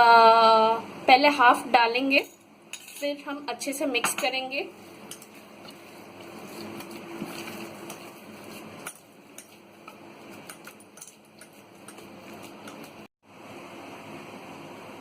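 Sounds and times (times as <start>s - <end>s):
stirring mixture in a bowl: 4.1s - 13.1s.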